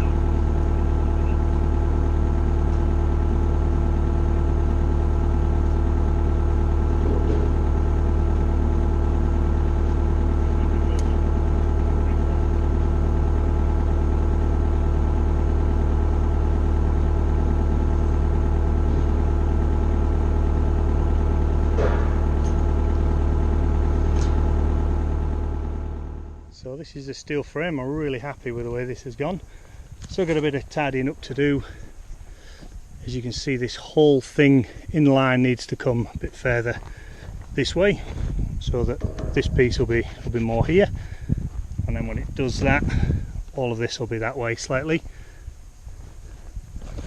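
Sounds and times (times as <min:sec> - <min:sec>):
excavator engine idling: 0:00.0 - 0:26.8, 0:36.4 - 0:47.0.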